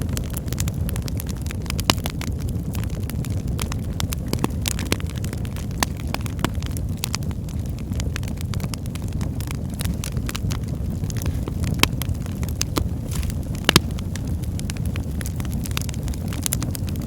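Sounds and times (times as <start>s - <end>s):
fire crackling and popping: 0.0s - 17.0s.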